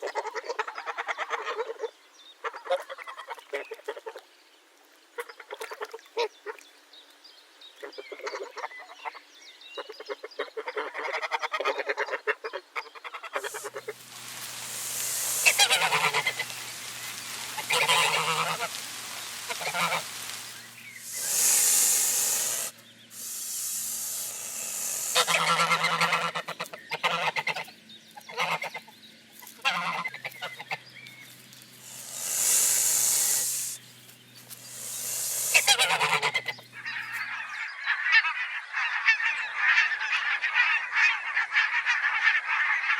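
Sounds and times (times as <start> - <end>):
geese honking: 13.2 - 27.7, 28.3 - 28.8, 29.6 - 30.8, 31.8 - 33.8, 34.5 - 37.5
loud rushing hiss: 13.4 - 26.4, 31.8 - 33.8, 34.5 - 36.6
steady low hum: 13.4 - 37.4.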